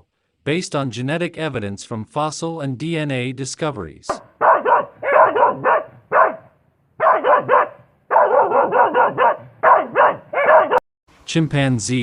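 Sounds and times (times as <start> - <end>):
dog barking: 4.2 - 10.8.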